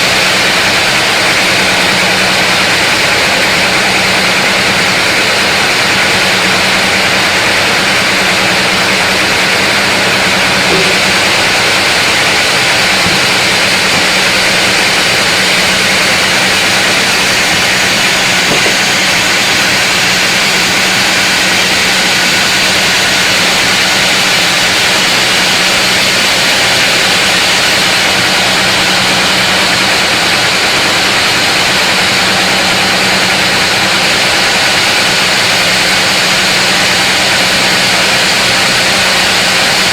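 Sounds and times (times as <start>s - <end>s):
sawmill saw cutting log: 0.0s - 39.9s.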